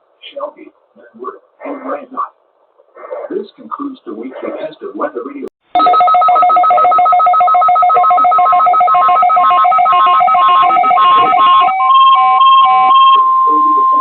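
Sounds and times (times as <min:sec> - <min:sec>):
electronic beeps: 0:05.8 - 0:14.0
steady alarm tone: 0:05.8 - 0:14.0
warbling alert trill: 0:05.8 - 0:14.0.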